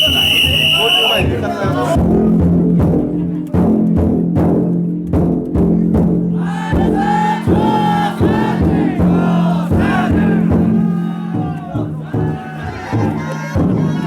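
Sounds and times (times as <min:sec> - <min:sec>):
people chanting loudly: 0:00.0 - 0:02.0, 0:06.4 - 0:14.0
large drum beaten: 0:00.0 - 0:14.0.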